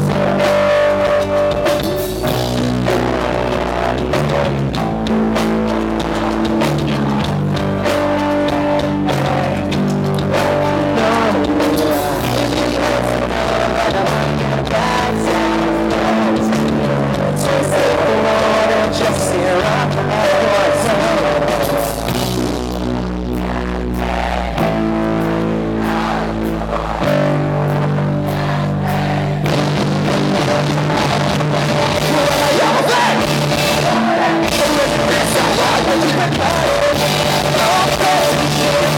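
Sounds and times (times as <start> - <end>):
person singing: 0.0 - 22.3, 30.0 - 38.9
bass guitar: 0.0 - 38.9
drums: 0.0 - 38.9
electric guitars: 0.0 - 38.9.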